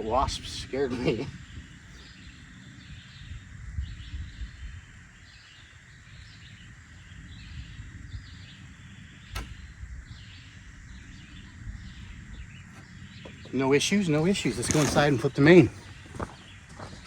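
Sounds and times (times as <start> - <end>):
faint bird chirps: 0.0 - 17.0
wind rumbling on microphone: 0.0 - 17.0
sharp click: 9.3 - 9.7.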